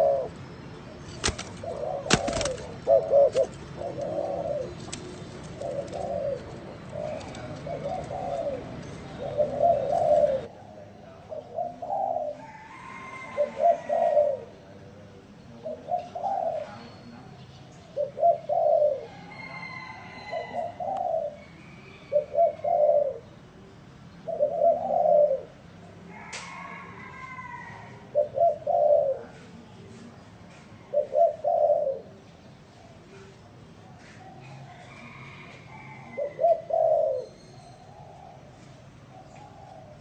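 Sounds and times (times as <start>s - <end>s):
dove cooing: 0.0s - 17.1s, 17.8s - 29.7s, 30.5s - 40.0s.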